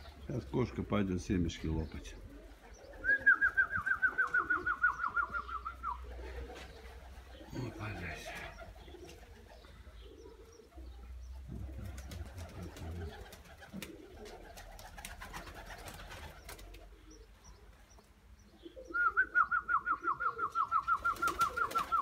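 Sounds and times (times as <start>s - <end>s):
pigeons cooing: 0.0s - 22.0s
pigeons shuffling: 2.3s - 9.6s, 10.4s - 17.0s, 19.1s - 22.0s.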